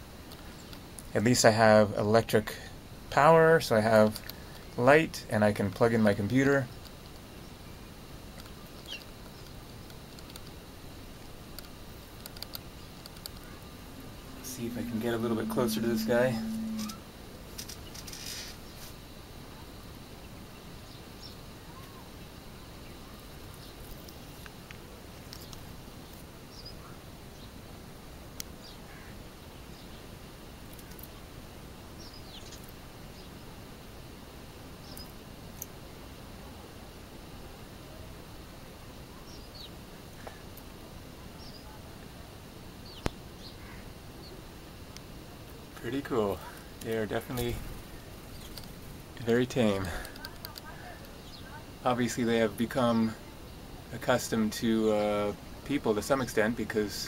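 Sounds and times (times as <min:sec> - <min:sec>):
steady low hiss: 0:00.0 - 0:57.0
faint bird chirps: 0:12.8 - 0:17.0.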